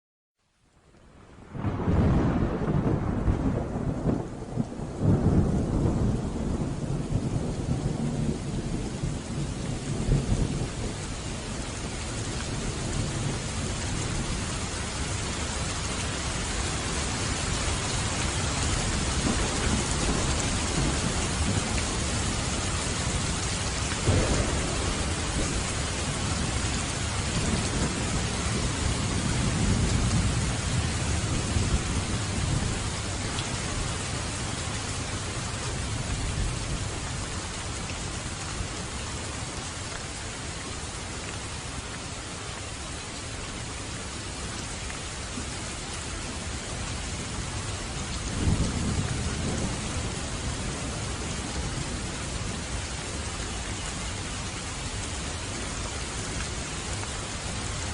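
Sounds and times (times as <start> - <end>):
heavy rain falling: 0.4 - 57.9
thunder rumbling: 1.4 - 37.6, 46.9 - 53.3.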